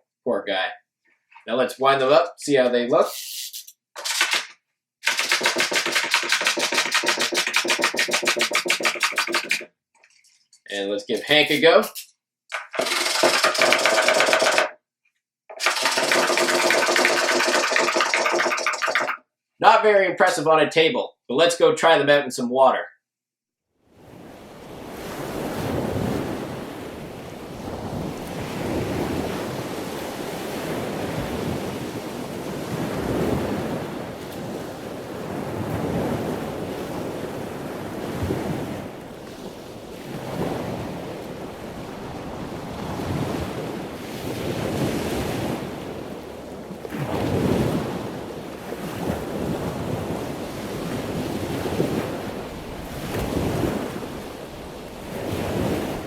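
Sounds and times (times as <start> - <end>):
water rushing: 4.0 - 9.7, 12.5 - 14.7, 15.5 - 19.2.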